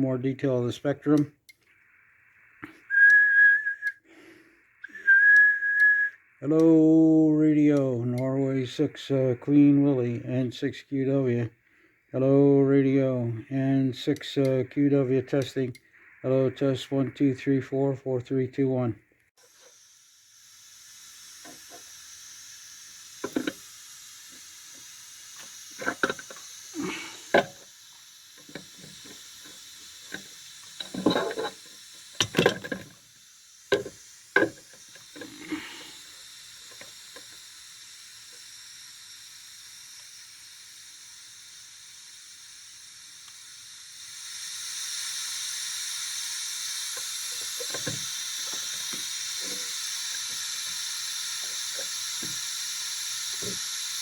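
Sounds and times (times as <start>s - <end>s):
white noise hiss: 0.0s - 54.0s
scattered clicks and knocks: 23.2s - 23.6s, 25.4s - 26.4s, 27.3s - 27.6s, 28.4s - 33.0s, 33.7s - 35.5s, 47.4s - 49.7s.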